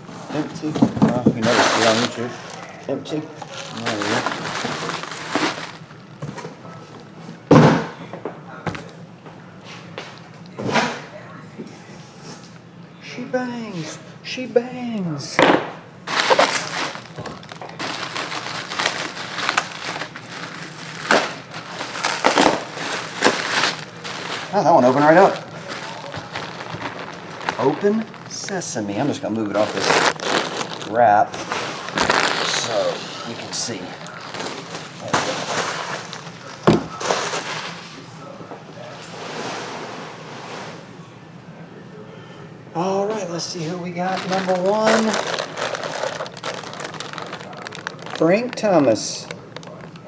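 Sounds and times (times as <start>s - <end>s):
plastic wrapping crinkling: 0.4s - 6.2s, 16.1s - 38.0s, 43.9s - 50.0s.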